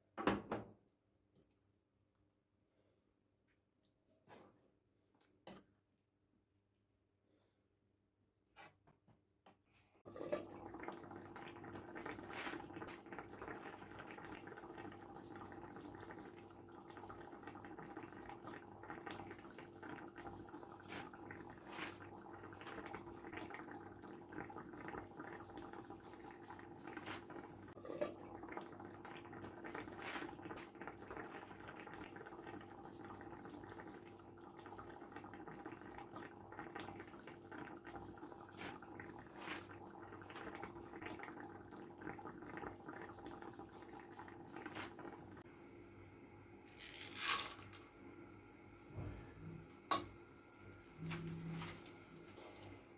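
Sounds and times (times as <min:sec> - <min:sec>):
water running: 0:10.1 - 0:45.5, 0:46.6 - 0:52.9.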